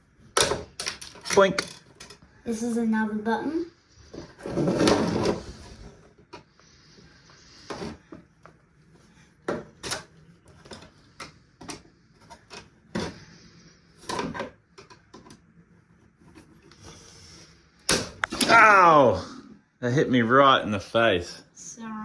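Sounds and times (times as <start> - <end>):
plastic parts clicking and knocking: 0.3 - 2.2, 9.4 - 13.2, 14.0 - 15.4.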